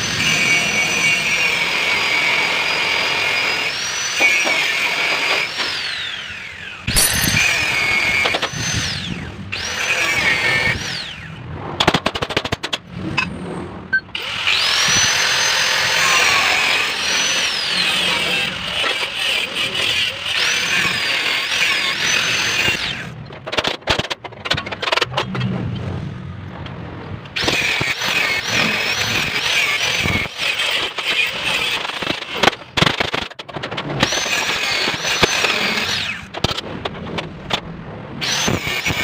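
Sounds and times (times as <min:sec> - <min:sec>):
power tool whining: 0:00.1 - 0:11.3, 0:14.1 - 0:23.1, 0:34.0 - 0:36.3.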